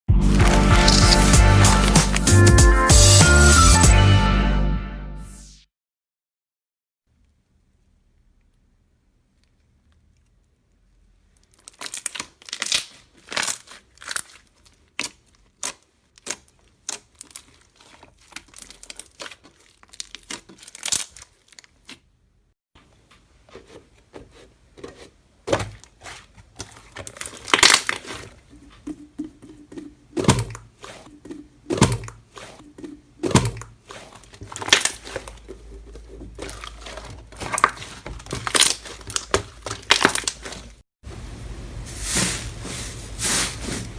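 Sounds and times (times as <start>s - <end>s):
slime crackling and popping: 0.2s - 2.4s, 11.4s - 22.0s, 26.7s - 28.3s, 31.8s - 35.4s, 36.2s - 40.8s.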